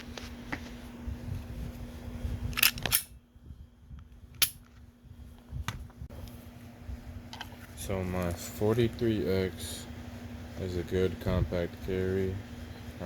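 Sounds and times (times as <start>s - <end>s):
pistol mechanical clicks: 2.6s - 3.2s, 4.4s - 4.6s.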